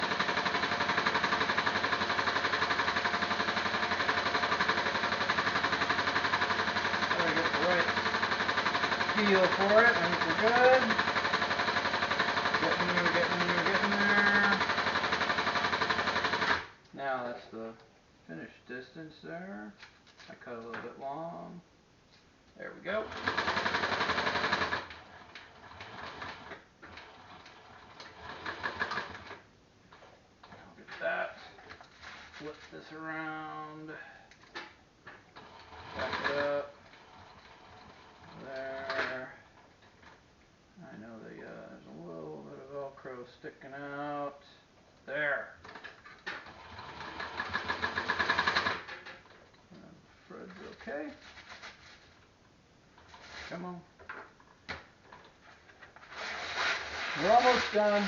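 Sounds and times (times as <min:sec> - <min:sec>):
sewing machine stitching: 0:00.0 - 0:16.8, 0:22.9 - 0:29.5, 0:35.3 - 0:39.4, 0:45.7 - 0:49.3, 0:56.1 - 0:58.0.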